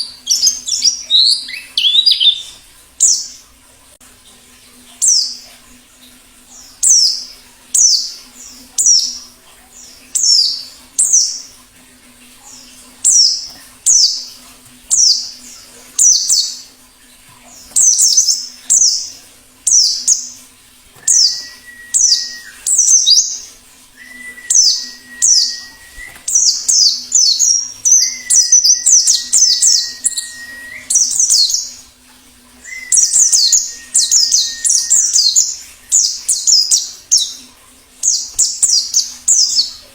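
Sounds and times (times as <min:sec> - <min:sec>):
birds chirping: 0:00.0 - 0:03.5, 0:06.5 - 0:11.7, 0:12.4 - 0:39.9
long flat whistled note: 0:21.1 - 0:22.6, 0:24.0 - 0:26.2, 0:29.9 - 0:30.9.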